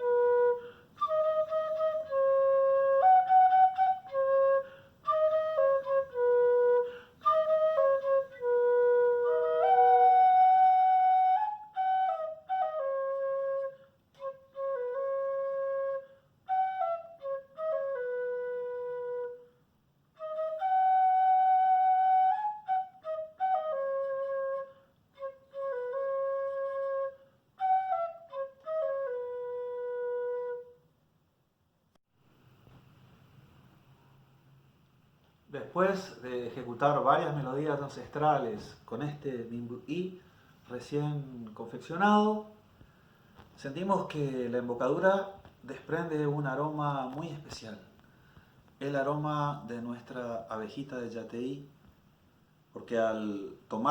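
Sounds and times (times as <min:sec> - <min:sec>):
cane flute melody: 0:00.0 - 0:30.9.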